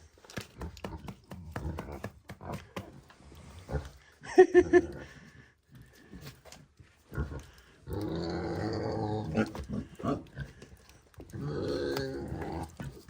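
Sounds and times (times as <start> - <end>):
pig grunting: 7.1 - 13.0.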